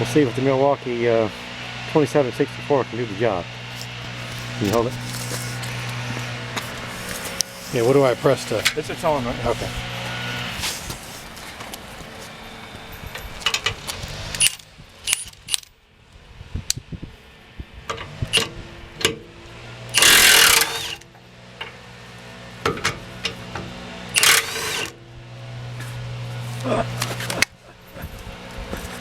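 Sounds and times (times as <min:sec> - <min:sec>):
low hum: 0:00.0 - 0:29.0
impact wrench hammering: 0:14.4 - 0:15.7, 0:20.0 - 0:21.0, 0:22.6 - 0:25.0.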